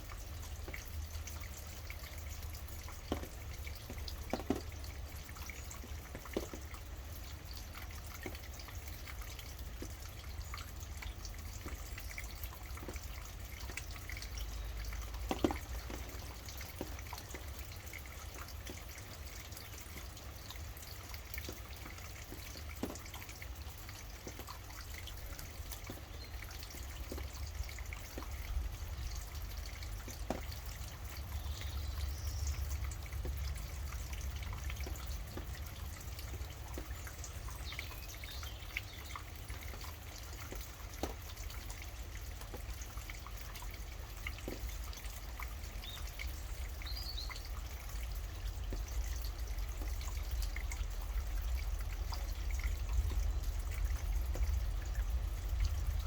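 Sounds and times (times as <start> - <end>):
rain drops tapping: 0.0 - 56.0
steady low rumble: 48.1 - 56.0.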